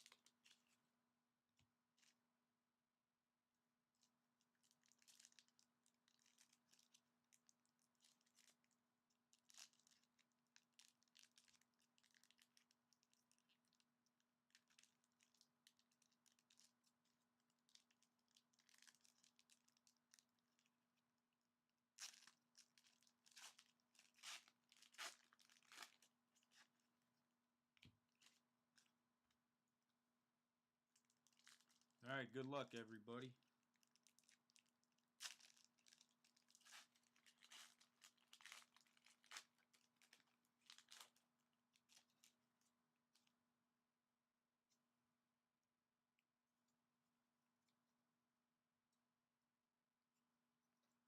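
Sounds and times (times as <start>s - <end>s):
card pack wrappers crinkling: 22.0s - 26.8s, 33.2s - 41.2s.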